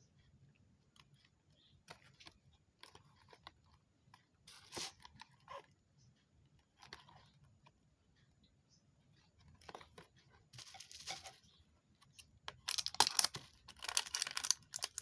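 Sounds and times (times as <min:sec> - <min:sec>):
plastic wrap crinkling: 0:12.6 - 0:15.0.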